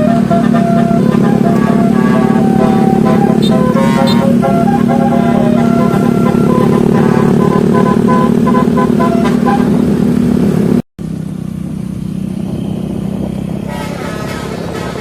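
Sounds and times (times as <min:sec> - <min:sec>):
bus musical horn: 0:00.0 - 0:10.4, 0:13.6 - 0:15.0
bus engine running: 0:00.0 - 0:15.0.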